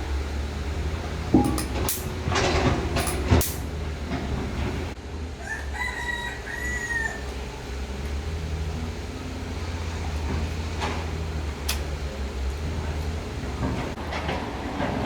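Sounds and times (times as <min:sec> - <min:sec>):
steady low hum: 0:00.0 - 0:14.0
sharp knocks and clatter: 0:01.0 - 0:05.0, 0:09.4 - 0:15.0
rooster crowing: 0:05.4 - 0:10.2.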